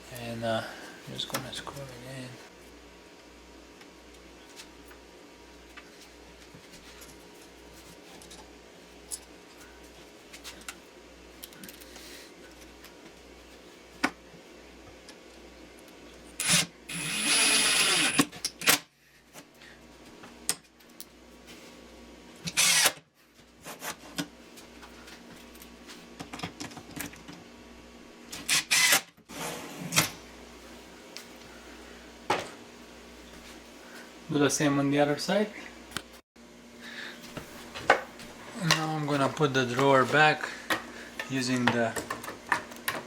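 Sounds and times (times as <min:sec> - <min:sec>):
cordless drill driving screws: 0:16.4 - 0:18.3, 0:22.5 - 0:23.0, 0:28.4 - 0:29.1.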